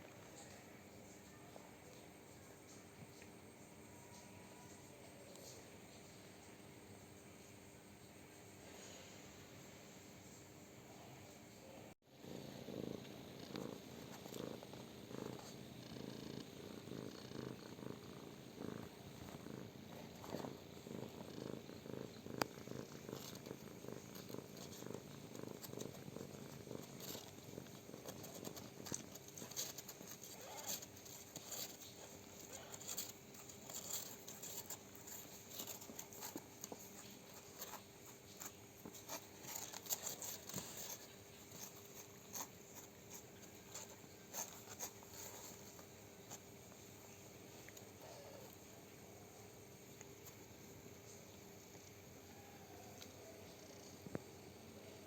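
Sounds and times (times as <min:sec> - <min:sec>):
cat purring: 0:10.8 - 0:55.0
soft clicks and rustles: 0:18.8 - 0:48.7.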